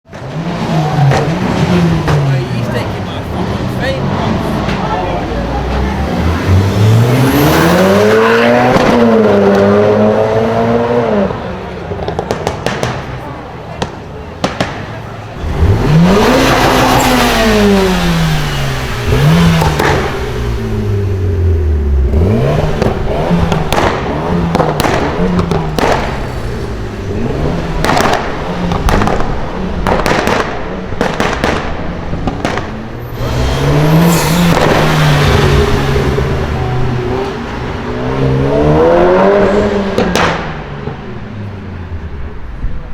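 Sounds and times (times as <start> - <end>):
car engine revving hard: 0.3 - 11.4, 15.3 - 40.7
exhaust crackles and pops: 11.9 - 21.2, 21.8 - 33.5.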